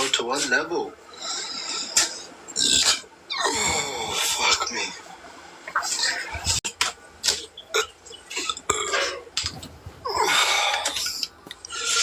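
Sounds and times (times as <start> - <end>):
person burping: 2.6 - 5.0, 7.7 - 9.3.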